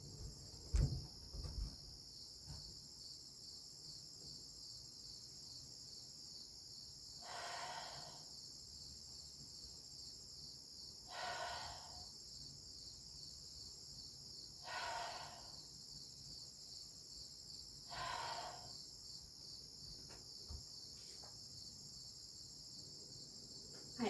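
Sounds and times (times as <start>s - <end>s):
crickets trilling: 0.0s - 24.0s
person breathing out: 7.2s - 8.2s, 11.1s - 12.0s, 14.6s - 15.6s, 17.9s - 18.8s.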